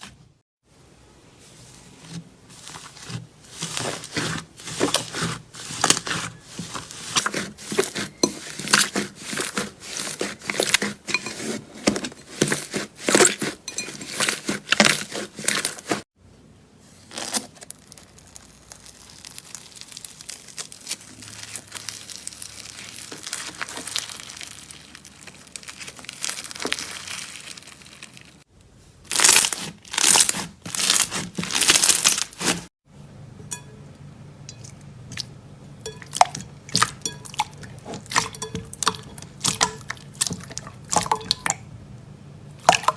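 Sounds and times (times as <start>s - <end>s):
slime squishing: 1.6s - 16.0s, 17.1s - 28.5s, 29.1s - 32.7s, 34.6s - 41.7s
slime crackling and popping: 17.1s - 28.5s, 29.1s - 32.7s.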